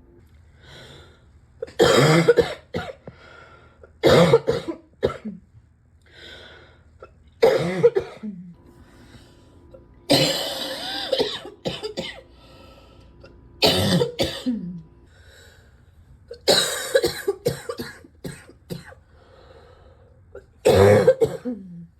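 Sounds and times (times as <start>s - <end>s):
person coughing deeply: 1.6s - 3.1s, 4.0s - 5.4s, 7.4s - 8.5s, 10.1s - 12.3s, 13.6s - 14.8s, 16.4s - 19.0s, 20.4s - 21.9s
quiet breaths: 8.6s - 9.8s, 12.3s - 13.4s, 15.0s - 16.3s, 19.0s - 20.3s.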